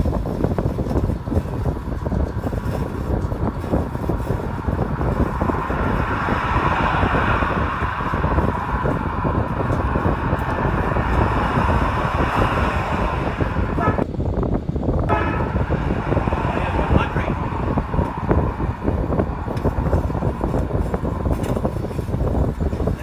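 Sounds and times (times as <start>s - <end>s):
car engine rumble: 0.0s - 23.0s
road noise hiss: 0.0s - 23.0s.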